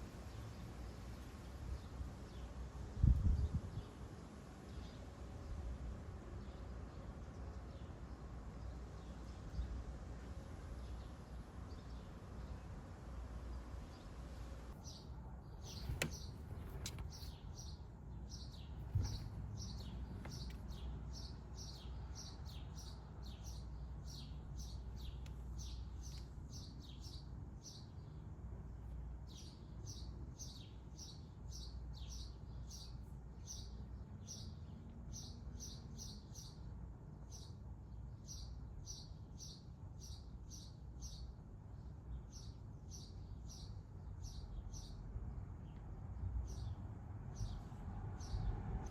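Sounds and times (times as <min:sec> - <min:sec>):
small bird chirping: 0:14.7 - 0:28.2.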